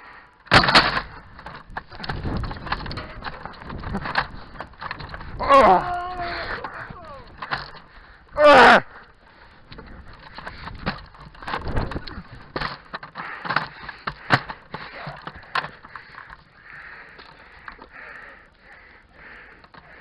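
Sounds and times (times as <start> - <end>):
clicks and knocks of handled gear: 0.4 - 20.0
breathing close to microphone: 13.1 - 20.0.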